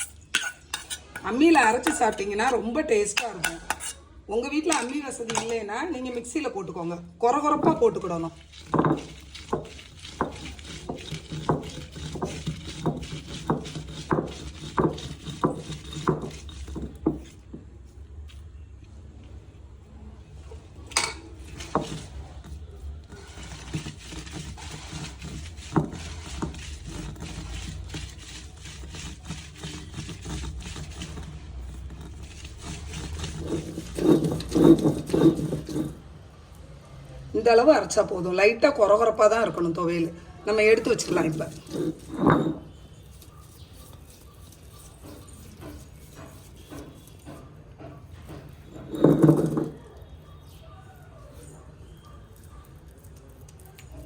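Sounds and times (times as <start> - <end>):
stone roller grinding on stone slab: 0.0 - 4.0, 4.7 - 6.6, 7.3 - 17.6, 21.0 - 36.1, 40.5 - 49.9.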